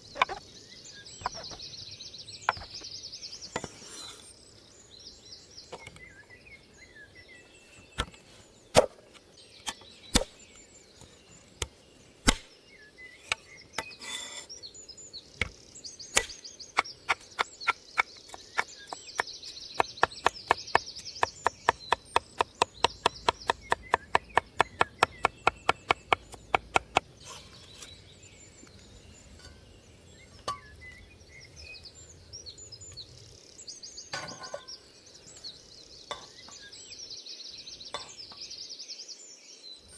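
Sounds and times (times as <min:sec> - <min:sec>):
knife chopping on cutting board: 0:12.3 - 0:12.5, 0:17.1 - 0:27.0.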